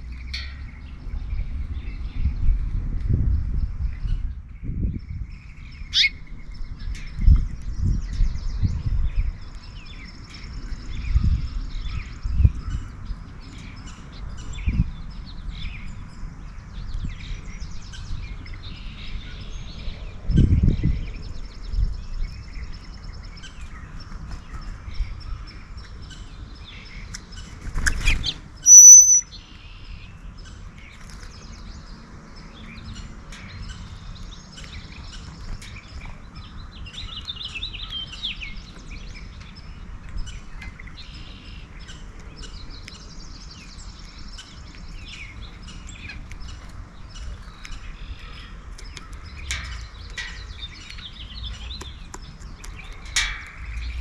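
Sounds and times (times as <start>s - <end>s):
songbirds chirping: 0.0s - 54.0s
loud short high bird call: 28.7s - 29.3s.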